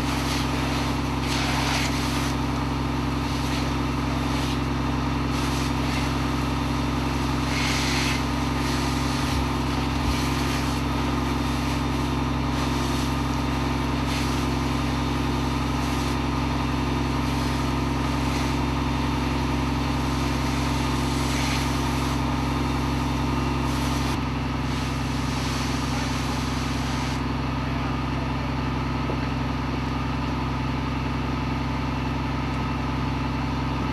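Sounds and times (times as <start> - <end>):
hiss: 0.0 - 2.6, 3.2 - 16.4, 17.0 - 27.2
heavy diesel engine running: 0.0 - 33.9.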